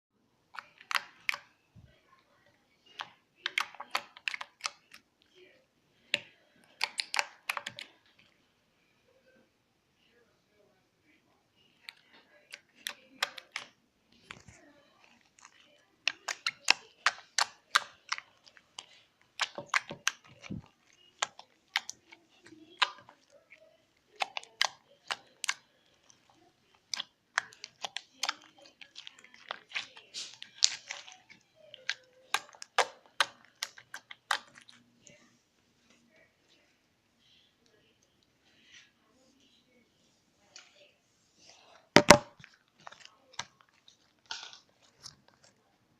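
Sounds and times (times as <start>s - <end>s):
slime clicking and popping: 3.0s - 5.0s, 6.8s - 7.9s, 15.3s - 23.2s, 24.1s - 26.0s, 42.0s - 43.6s.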